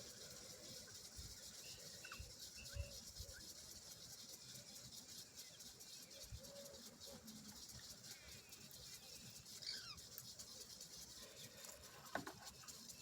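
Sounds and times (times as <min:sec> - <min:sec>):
faint hiss: 0:00.0 - 0:13.0
faint bird-like chirps: 0:01.4 - 0:03.5, 0:08.1 - 0:10.6.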